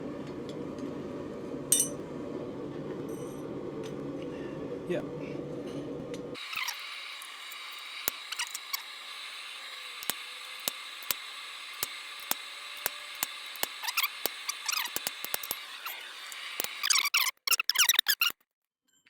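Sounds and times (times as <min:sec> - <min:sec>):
steady high hum: 0:00.0 - 0:16.8.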